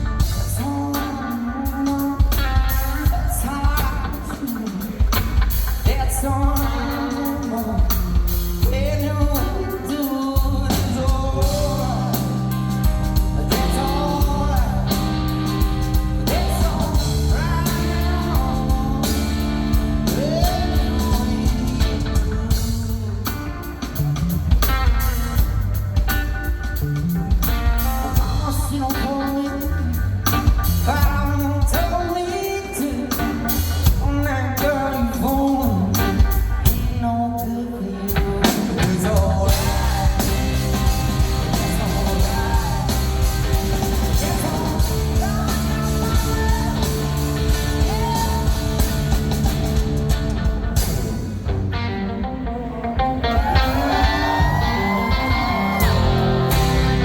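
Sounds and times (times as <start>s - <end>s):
person singing: 0.0s - 25.5s, 27.5s - 51.2s, 51.8s - 57.0s
drum kit: 0.0s - 51.9s, 53.3s - 57.0s
electric guitar: 0.0s - 57.0s.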